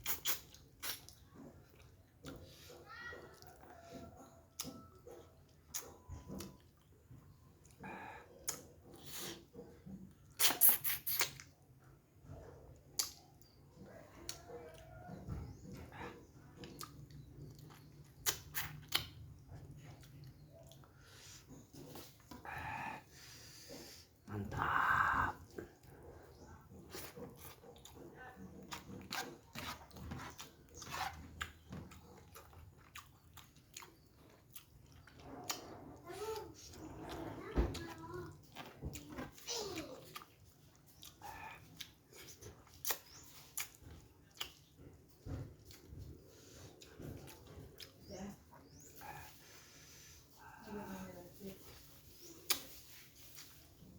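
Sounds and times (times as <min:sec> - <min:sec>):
wet mouth clicks and smacks: 0:00.0 - 0:02.5, 0:10.4 - 0:11.6, 0:12.8 - 0:13.6, 0:16.6 - 0:19.4, 0:40.1 - 0:44.8, 0:52.4 - 0:53.6
person chewing with wet smacks: 0:00.0 - 0:53.9.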